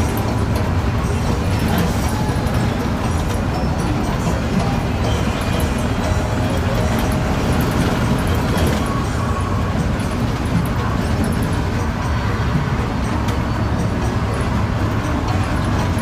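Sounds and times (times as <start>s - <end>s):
bus engine and road rumble: 0.0s - 16.0s.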